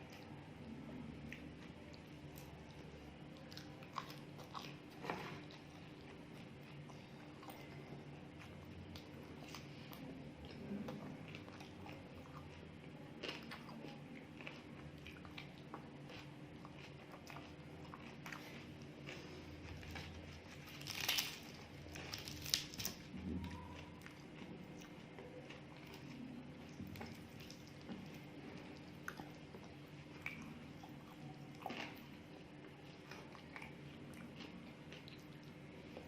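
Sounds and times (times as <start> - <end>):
food being bitten and chewed: 0.0 - 36.0
low steady hum: 0.0 - 36.0.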